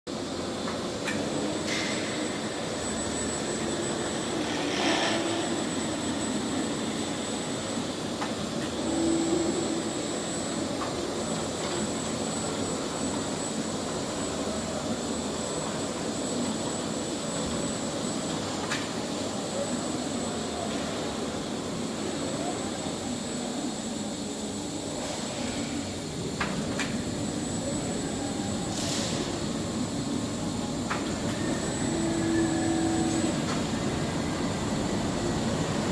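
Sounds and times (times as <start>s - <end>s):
thin high whine: 1.3s - 18.6s, 27.1s - 35.9s.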